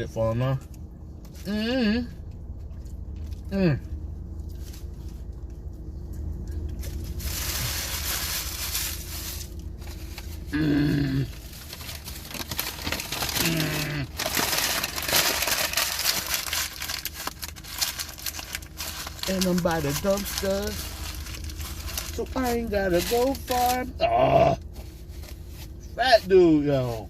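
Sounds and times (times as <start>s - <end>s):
person grunting or humming: 3.5s - 3.9s, 10.5s - 11.4s, 13.3s - 14.2s, 24.0s - 24.6s
food wrappers crumpling: 6.8s - 24.0s.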